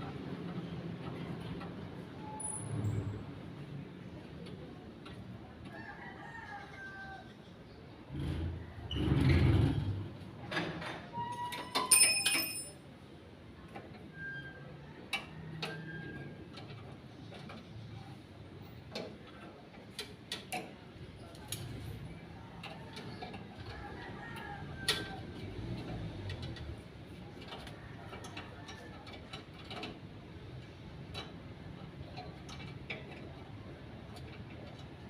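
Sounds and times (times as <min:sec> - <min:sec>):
ringing metal clang: 0:11.7 - 0:12.8.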